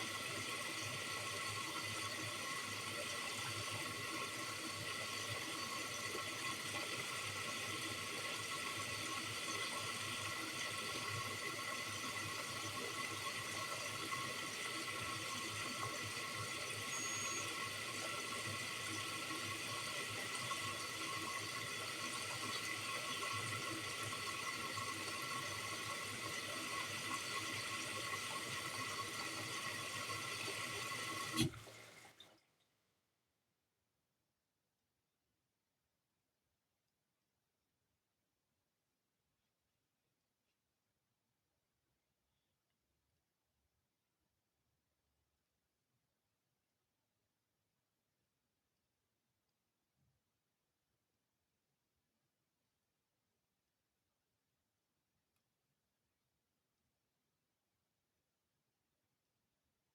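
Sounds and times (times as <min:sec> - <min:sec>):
water rushing into washing machine: 0:00.0 - 0:32.4.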